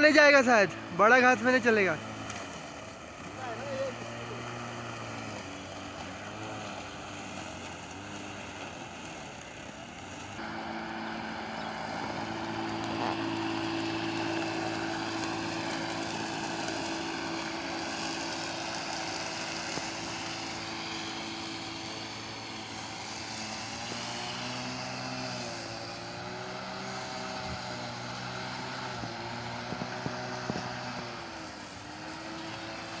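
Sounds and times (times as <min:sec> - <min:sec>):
lawn mower motor whining: 0:00.0 - 0:33.0.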